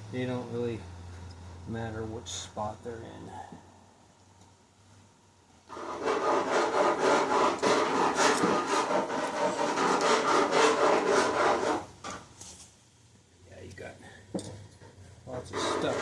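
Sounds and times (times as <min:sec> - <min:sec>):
rapid scraping on engine part: 0:05.7 - 0:11.8, 0:14.8 - 0:16.0.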